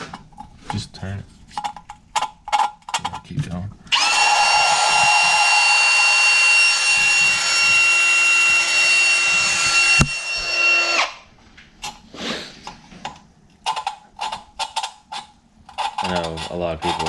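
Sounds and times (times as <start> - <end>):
power drill motor whine: 3.9 - 11.2
gritty grinding of valve: 13.6 - 17.0.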